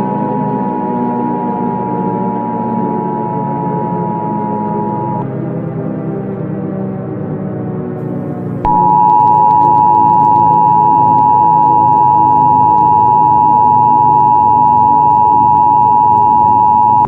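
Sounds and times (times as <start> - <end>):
two-tone alert signal: 0.0 - 5.2, 8.7 - 17.0
dark ambient music: 0.0 - 14.2.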